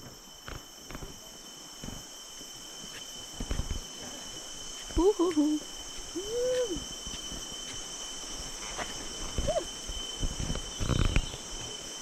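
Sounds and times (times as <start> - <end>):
insects whining: 0.0 - 12.0
voice-like ooh calls: 6.2 - 6.8.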